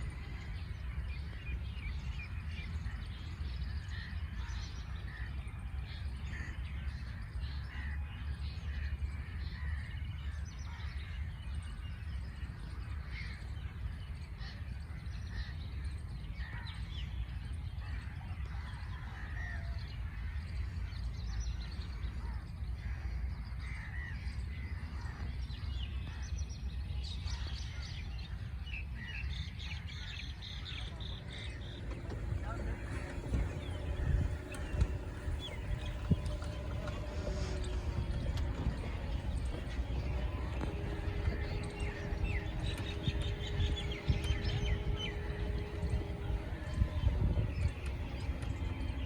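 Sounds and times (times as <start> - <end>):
low background rumble: 30.4 - 49.0
birds chirping and calling: 30.7 - 49.0.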